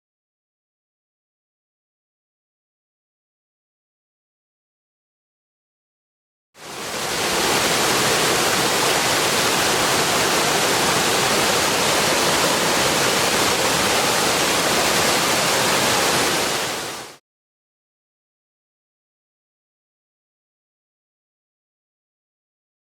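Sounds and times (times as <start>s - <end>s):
waterfall rushing: 6.6s - 17.2s.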